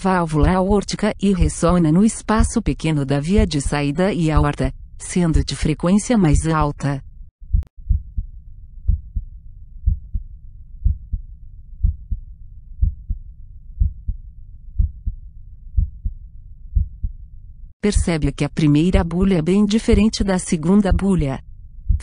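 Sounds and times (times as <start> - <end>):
heartbeat through stethoscope: 0.4 - 4.7, 6.3 - 6.8, 7.5 - 17.2, 17.9 - 18.3, 19.8 - 22.0.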